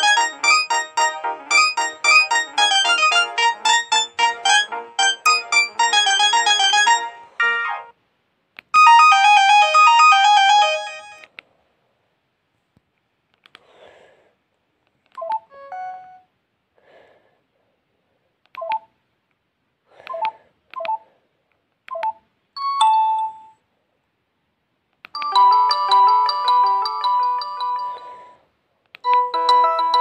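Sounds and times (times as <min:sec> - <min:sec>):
phone ringtone melody: 0:00.0 - 0:07.9, 0:08.8 - 0:11.2, 0:25.2 - 0:28.4, 0:29.1 - 0:30.0.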